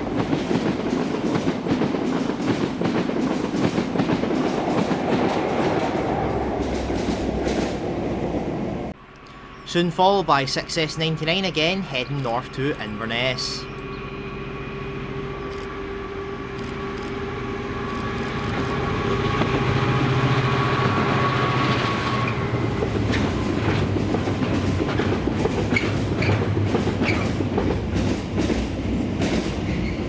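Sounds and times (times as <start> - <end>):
diesel locomotive engine drone: 0.0 - 30.0
wagon wheels clicking on rail joints: 22.8 - 30.0.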